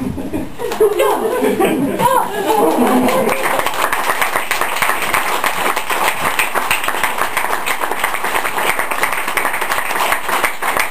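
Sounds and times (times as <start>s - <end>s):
audience clapping: 2.4s - 10.9s.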